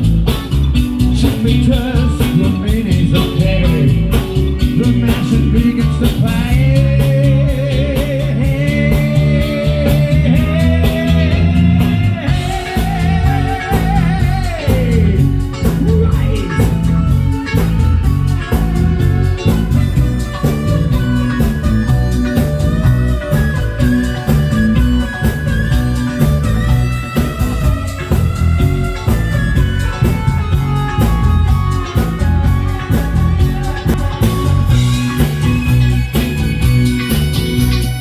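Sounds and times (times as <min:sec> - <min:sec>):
bass guitar: 0:00.0 - 0:38.0
electric guitar lines: 0:00.0 - 0:38.0
steady drum beat: 0:00.0 - 0:38.0.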